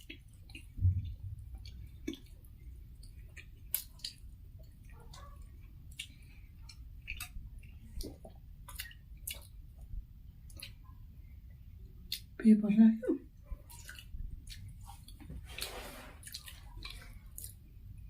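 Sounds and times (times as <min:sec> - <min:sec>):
mouth clicks and smacks: 0:00.0 - 0:05.2, 0:05.9 - 0:11.0, 0:13.6 - 0:15.3
people chewing food: 0:00.0 - 0:12.4, 0:13.3 - 0:18.0.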